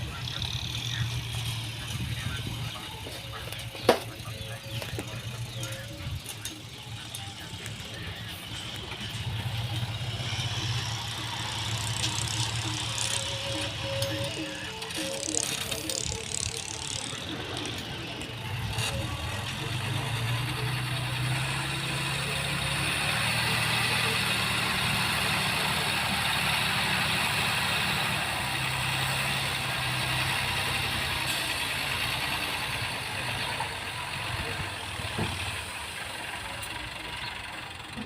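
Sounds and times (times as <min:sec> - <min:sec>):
bulldozer engine running: 0:00.0 - 0:38.0.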